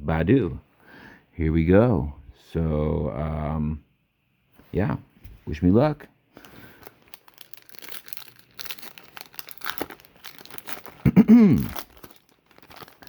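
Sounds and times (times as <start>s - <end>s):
wrapper tearing and crinkling: 6.4s - 13.0s.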